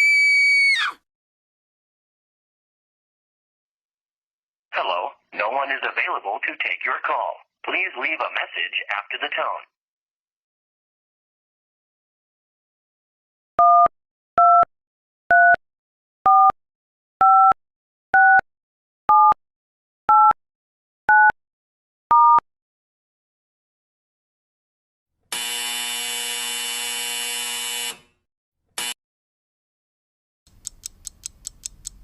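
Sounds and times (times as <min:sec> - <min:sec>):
harsh buzzing tone: 0:25.3 - 0:28.1.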